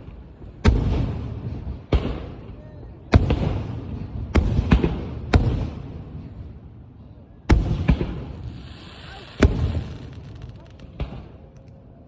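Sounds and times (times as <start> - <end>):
fireworks bangs with rumbling echo: 0.0 - 11.7.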